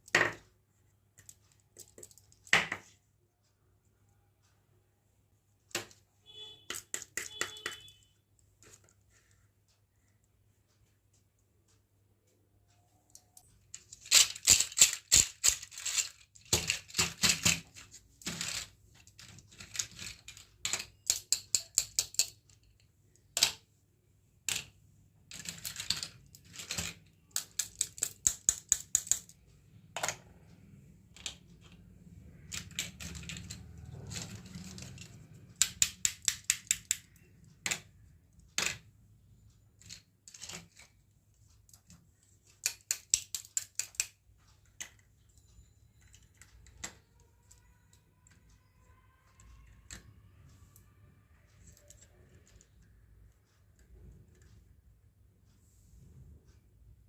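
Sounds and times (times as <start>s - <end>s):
plastic toy pieces clattering: 13.7s - 23.6s, 25.3s - 29.3s, 32.4s - 37.9s, 39.8s - 40.9s, 42.5s - 44.2s.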